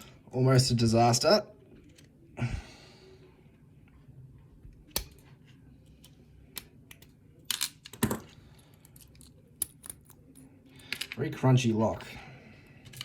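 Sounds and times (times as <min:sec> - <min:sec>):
metallic lock clicks and taps: 0:04.9 - 0:05.2.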